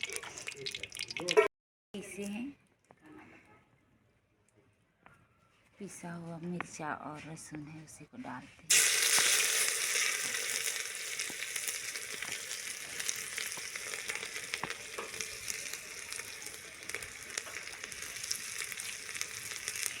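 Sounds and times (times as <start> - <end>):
oil crackling with pops: 8.7 - 20.0
paste sizzling in hot oil: 8.7 - 20.0.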